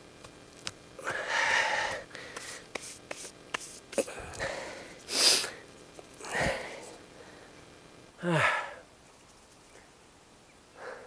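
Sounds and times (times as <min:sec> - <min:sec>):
man breathing hard: 0:01.0 - 0:02.7, 0:04.0 - 0:07.6, 0:08.2 - 0:08.9, 0:10.8 - 0:11.0
sharp nasal sniff: 0:05.0 - 0:05.6.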